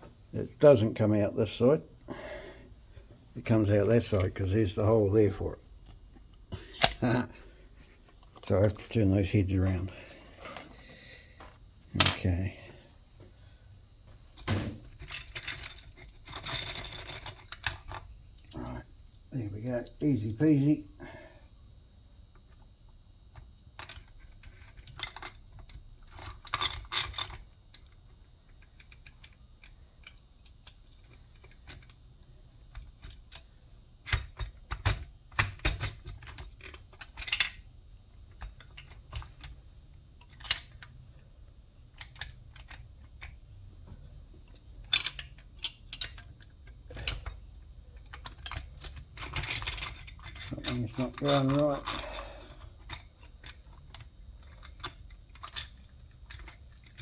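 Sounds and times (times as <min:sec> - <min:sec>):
metallic clicks of bolts and nuts: 0:44.8 - 0:47.4, 0:48.0 - 0:52.2.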